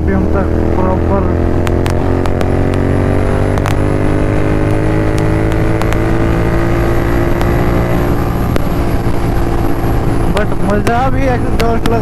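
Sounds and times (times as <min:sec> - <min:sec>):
motorcycle engine revving high: 0:00.0 - 0:12.0.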